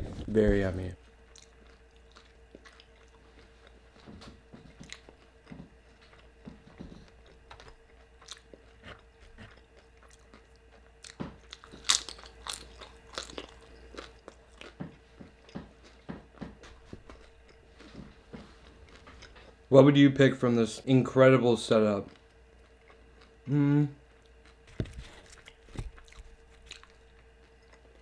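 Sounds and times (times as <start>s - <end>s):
crunching tortilla chips: 9.8s - 14.8s, 24.4s - 28.0s.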